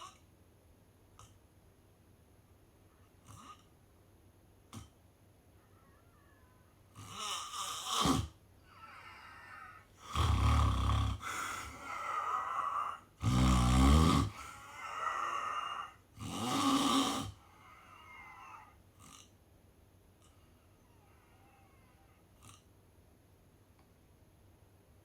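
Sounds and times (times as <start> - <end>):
loud snores: 0.0 - 0.2, 3.2 - 3.7, 7.0 - 19.3.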